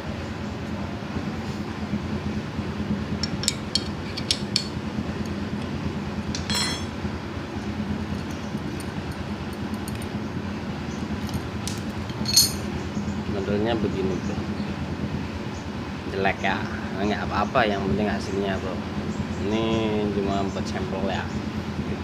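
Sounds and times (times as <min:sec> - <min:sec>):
ringing metallic clink: 0:06.3 - 0:07.0, 0:12.1 - 0:12.8.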